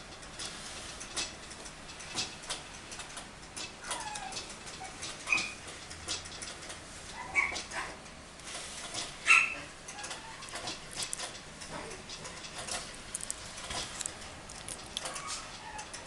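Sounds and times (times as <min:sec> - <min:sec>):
puppy whimpering and squeaking: 0:03.8 - 0:05.6, 0:07.2 - 0:07.9, 0:09.3 - 0:10.6, 0:14.6 - 0:16.0.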